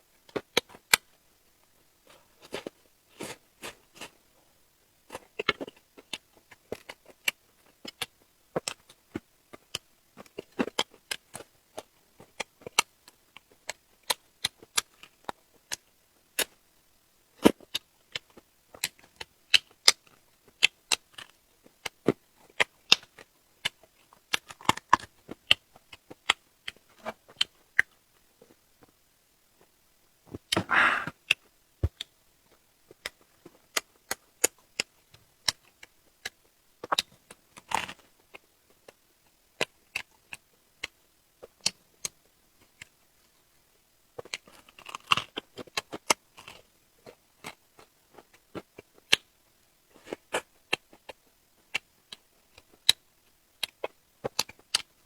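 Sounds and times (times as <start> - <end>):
chewing and crunching shellfish: 44.2 - 48.8.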